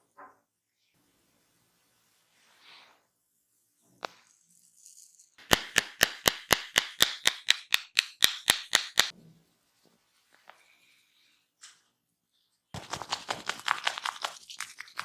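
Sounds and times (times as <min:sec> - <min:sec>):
hands slapping head: 0:05.4 - 0:09.1, 0:12.8 - 0:15.0.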